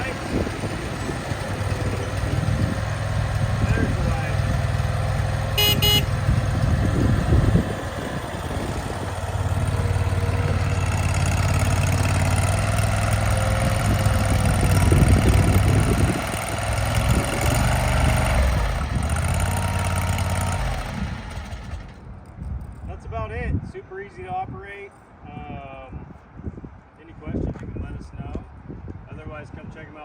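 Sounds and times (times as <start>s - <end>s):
loader engine running: 0.0s - 22.4s.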